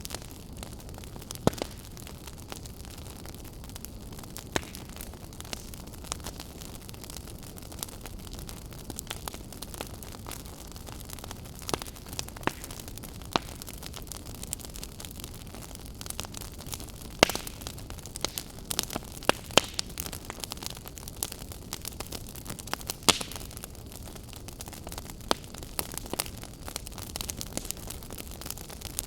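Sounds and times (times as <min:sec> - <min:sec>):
sharp fire pops: 0:00.0 - 0:14.8, 0:15.5 - 0:29.0
wood fire crackling: 0:00.0 - 0:29.0.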